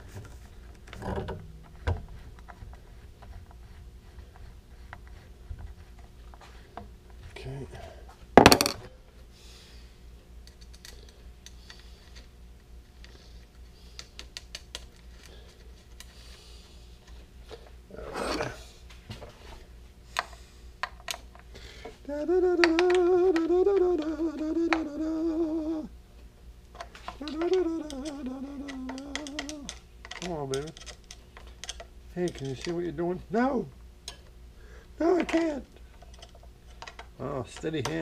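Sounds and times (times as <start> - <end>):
man humming a tune: 22.0 - 26.0, 27.0 - 30.7.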